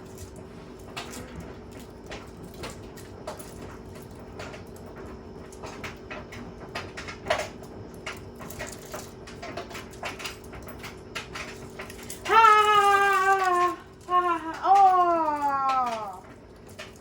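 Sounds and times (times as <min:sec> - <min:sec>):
knocks and rattles: 0:00.0 - 0:17.0
washing machine motor hum: 0:00.0 - 0:17.0.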